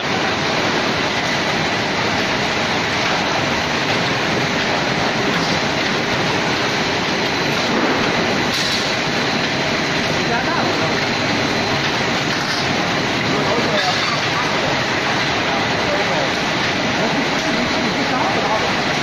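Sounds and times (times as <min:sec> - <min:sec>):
machinery running: 0:00.0 - 0:19.0.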